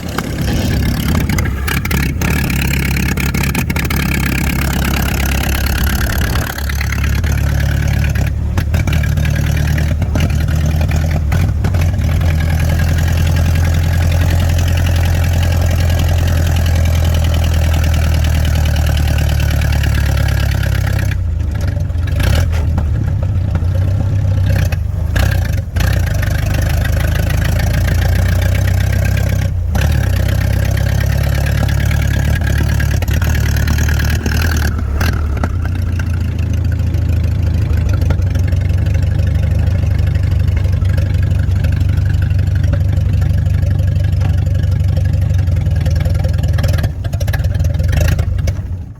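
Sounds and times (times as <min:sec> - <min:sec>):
car engine running: 0:00.0 - 0:48.9.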